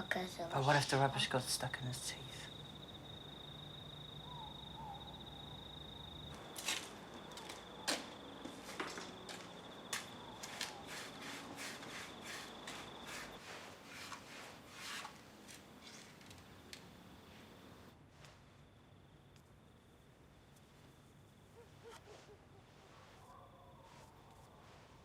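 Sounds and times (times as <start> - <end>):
high-pitched insect trill: 0.0 - 13.4.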